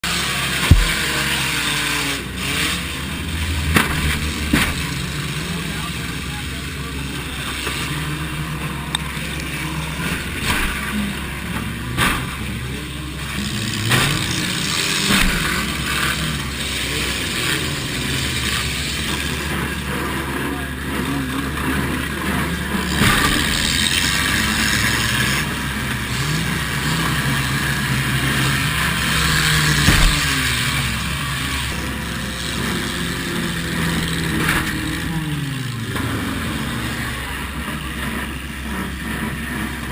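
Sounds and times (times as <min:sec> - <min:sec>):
car engine revving: 0:00.0 - 0:39.9
crunching bangs of car hits: 0:00.6 - 0:01.5, 0:29.4 - 0:30.8.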